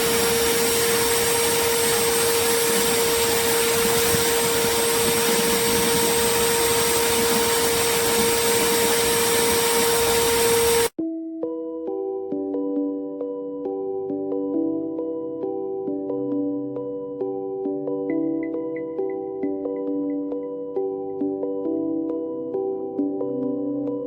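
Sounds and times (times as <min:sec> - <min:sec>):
shop vacuum motor whine: 0:00.0 - 0:11.0.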